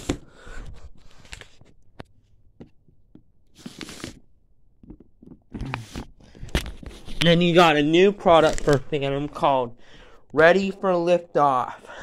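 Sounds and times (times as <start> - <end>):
cardboard rustling: 4.8 - 9.5.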